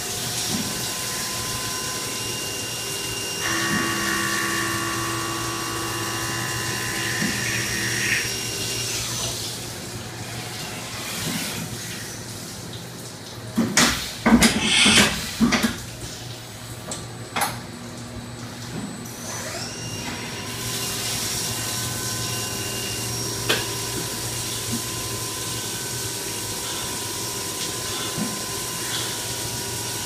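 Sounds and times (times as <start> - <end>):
milling spindle whine: 0.9 - 9.1.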